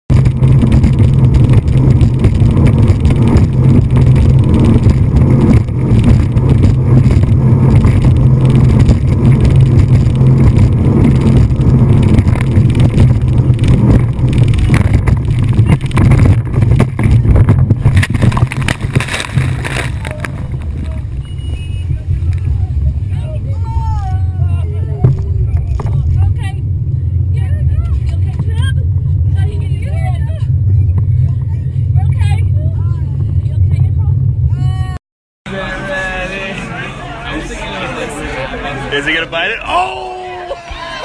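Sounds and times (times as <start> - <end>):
rushing water noise: 0.1 - 21.0
motorboat engine droning: 0.1 - 41.0.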